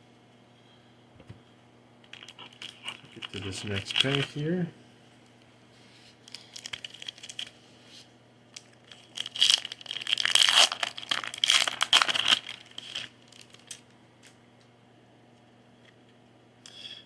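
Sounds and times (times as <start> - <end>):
foil wrapper crinkling: 2.1 - 4.6, 6.2 - 7.6, 8.5 - 13.9.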